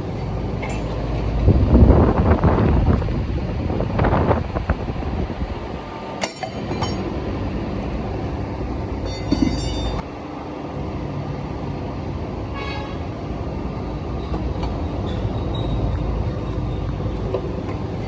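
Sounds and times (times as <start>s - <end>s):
steel clanging: 6.2s - 7.4s, 9.0s - 10.0s.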